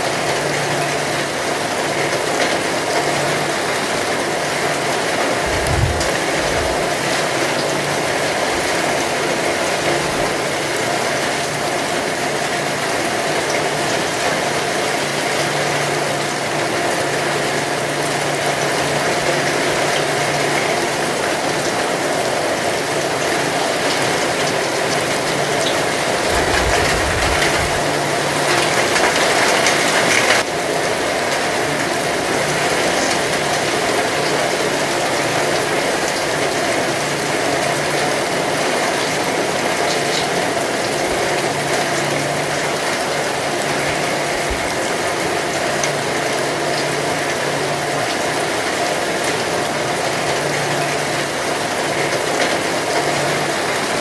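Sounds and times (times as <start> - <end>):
heavy rain falling: 0.0 - 54.0
low rumble: 5.4 - 7.0, 26.2 - 28.2.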